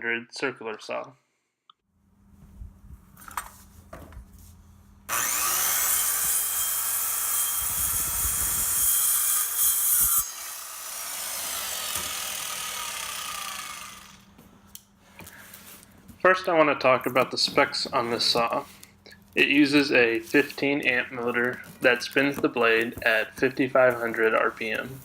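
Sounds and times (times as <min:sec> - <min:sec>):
saw blade winding down: 0:05.1 - 0:14.3
circular saw cutting wood: 0:05.1 - 0:14.4.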